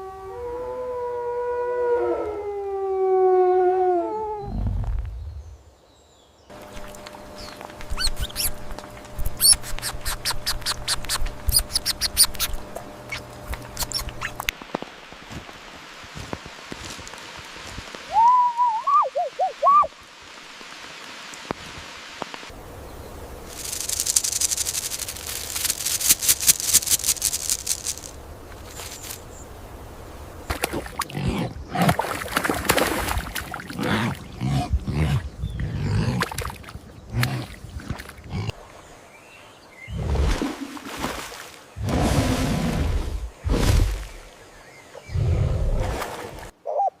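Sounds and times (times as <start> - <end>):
high squeaky animal calls: 7.3 - 14.5
high rattling trill of clicks: 23.5 - 28.2
low grunting animal calls: 33.6 - 38.6.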